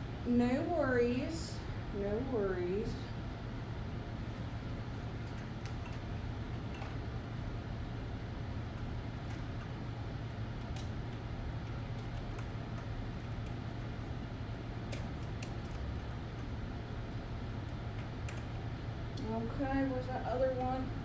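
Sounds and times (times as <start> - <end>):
steady low hum: 0.0 - 21.0
cables clicking and tapping: 4.9 - 7.5, 8.6 - 19.4.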